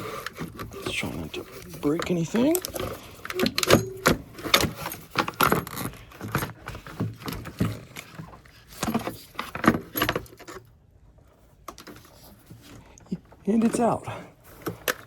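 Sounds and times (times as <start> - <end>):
metal and plastic parts clinking: 0.2 - 10.7.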